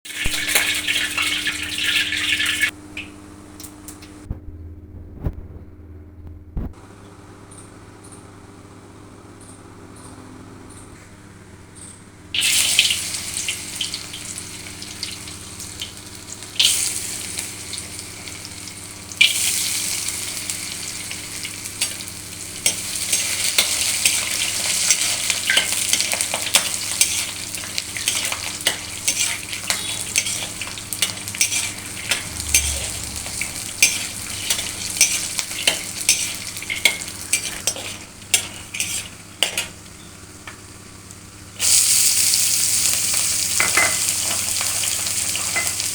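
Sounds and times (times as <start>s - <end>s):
food sizzling in hot oil: 0.0s - 3.1s, 12.4s - 45.9s.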